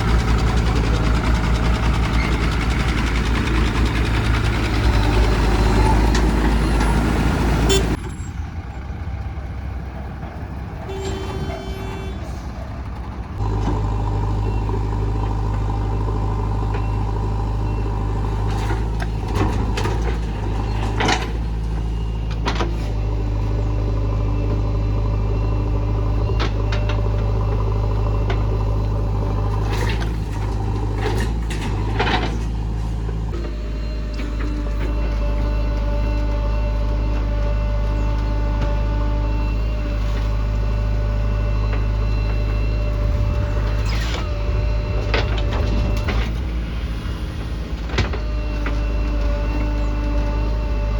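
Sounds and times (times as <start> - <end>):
heavy diesel engine running: 0.0 - 50.9
short beep tone: 10.9 - 12.2.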